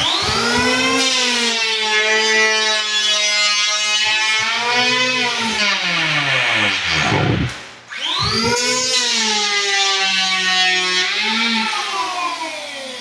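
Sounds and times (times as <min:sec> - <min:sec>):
electric planer whining: 0:03.8 - 0:08.9.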